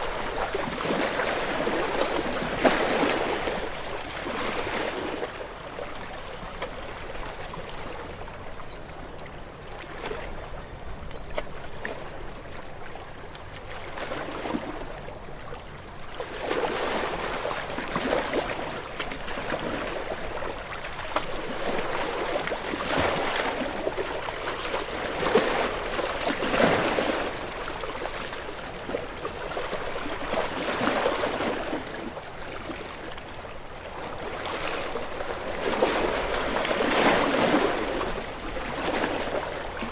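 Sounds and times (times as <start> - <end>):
ocean waves breaking over rocks: 0.0 - 8.3, 16.6 - 39.9.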